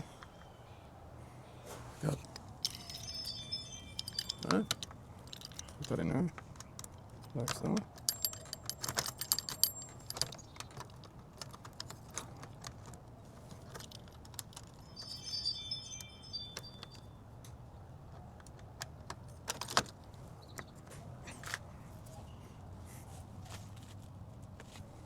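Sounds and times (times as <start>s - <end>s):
small metal parts clinking: 2.6s - 12.8s, 13.4s - 17.1s.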